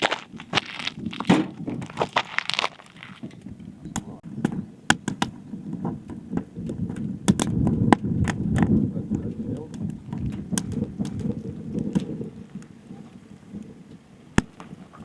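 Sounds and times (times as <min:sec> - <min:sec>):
sharp cracks and knocks: 0:00.0 - 0:03.4, 0:04.0 - 0:05.4, 0:06.4 - 0:08.7, 0:14.4 - 0:14.7
scraping crunch: 0:00.0 - 0:04.2.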